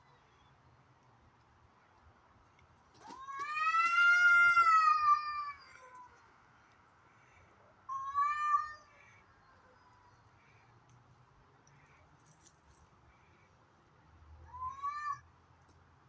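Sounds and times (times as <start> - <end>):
cats yowling: 3.1 - 6.1, 7.9 - 9.0, 14.5 - 15.2.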